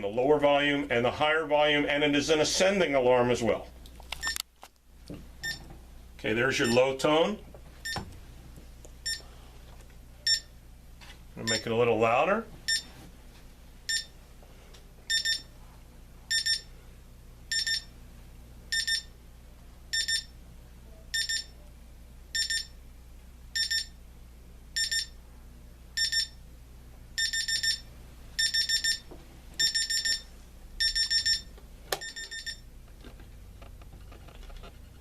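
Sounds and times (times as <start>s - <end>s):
alarm clock beeping: 11.5s - 11.7s, 13.9s - 14.1s, 15.1s - 15.5s, 16.3s - 16.7s, 17.5s - 17.9s, 18.7s - 19.1s, 19.9s - 20.3s, 21.2s - 21.5s, 22.4s - 22.7s, 23.6s - 23.9s, 24.8s - 25.2s, 26.0s - 26.4s, 27.2s - 29.0s, 29.6s - 32.6s.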